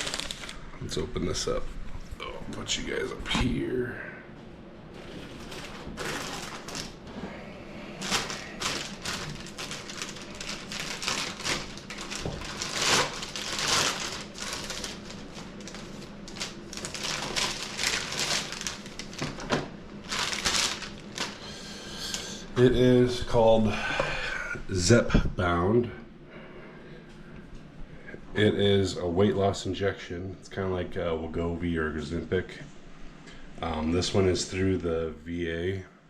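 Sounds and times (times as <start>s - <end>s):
package rustling scrapes: 0.0s - 0.6s, 4.9s - 7.1s, 8.0s - 19.4s, 20.0s - 22.4s.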